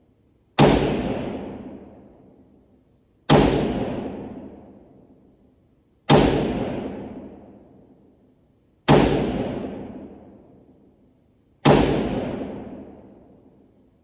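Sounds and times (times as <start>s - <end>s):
rifle shots with echo: 0.6s - 2.4s, 3.3s - 5.2s, 6.1s - 7.9s, 8.9s - 10.8s, 11.6s - 13.7s.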